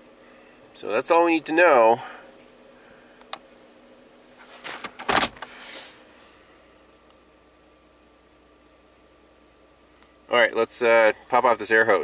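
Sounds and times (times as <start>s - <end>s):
rustling and knocks: 4.4s - 5.9s
car door click: 4.7s - 5.5s
car door slamming shut: 4.7s - 5.5s.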